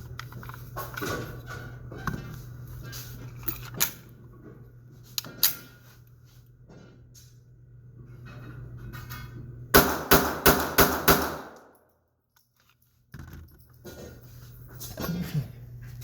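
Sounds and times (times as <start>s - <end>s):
pistol shots: 9.8s - 11.7s.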